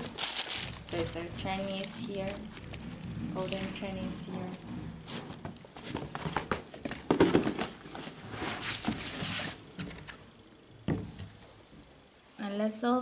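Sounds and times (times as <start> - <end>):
paper rustling: 0.0 - 3.9, 5.1 - 9.6
taps and knocks of handling: 5.2 - 7.8.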